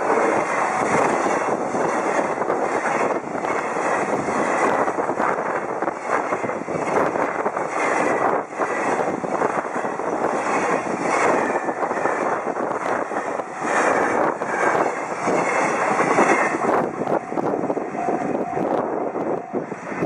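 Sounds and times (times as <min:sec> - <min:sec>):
train wheels rumbling on rails: 0:00.0 - 0:20.0.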